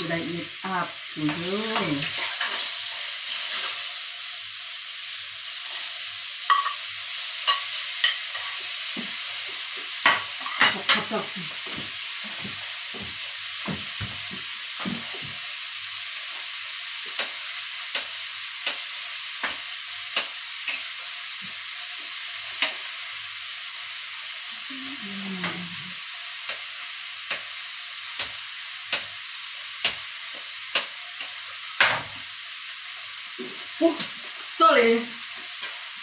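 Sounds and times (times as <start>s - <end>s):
seafood sizzling in hot oil: 0.0s - 36.0s.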